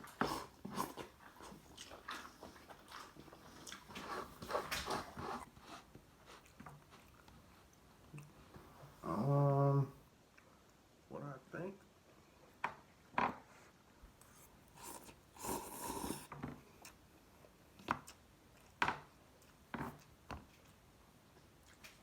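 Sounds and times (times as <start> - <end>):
person slurping noodles: 0.0 - 1.1, 14.4 - 16.3.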